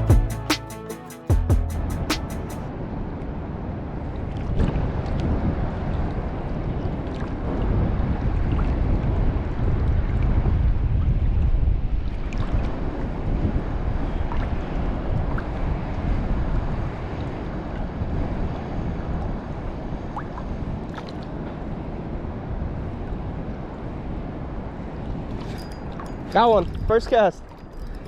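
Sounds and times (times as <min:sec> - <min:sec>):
wind: 0:00.8 - 0:28.0.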